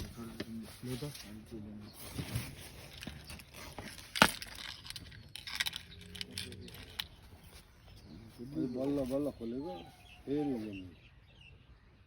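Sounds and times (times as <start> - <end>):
fishing tackle clicks: 3.9 - 7.2.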